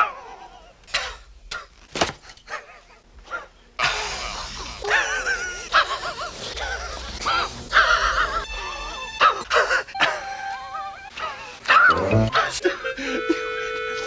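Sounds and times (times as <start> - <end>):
background noise: 0.0 - 14.0
man wheezing laugh: 12.3 - 13.6.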